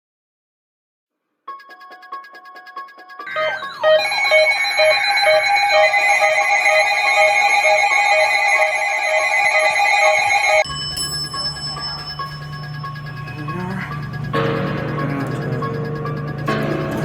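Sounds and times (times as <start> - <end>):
electronic alarm tones and beeps: 3.2 - 17.0
pulsing beat: 3.3 - 17.0
low hum: 10.2 - 17.0.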